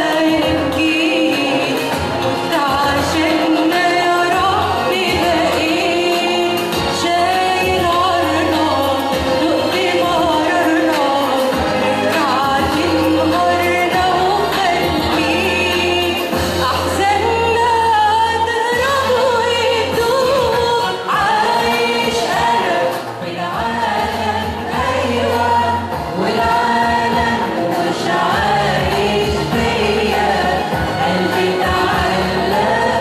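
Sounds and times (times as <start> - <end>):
church choir singing a hymn: 21.1 - 33.0.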